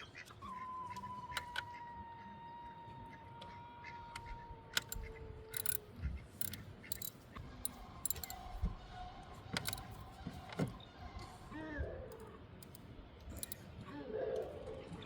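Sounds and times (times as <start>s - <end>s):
metallic clicks of hand tools: 4.8s - 5.8s, 6.4s - 8.6s, 9.6s - 10.1s, 12.1s - 13.6s.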